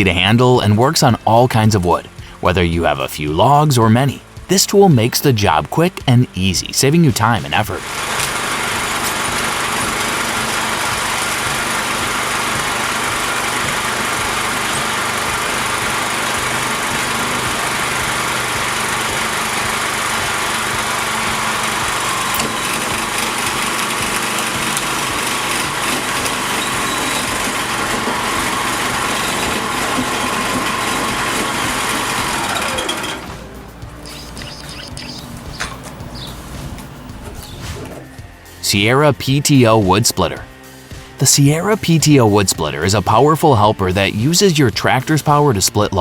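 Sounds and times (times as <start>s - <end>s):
small motor whining under load: 7.8s - 38.6s.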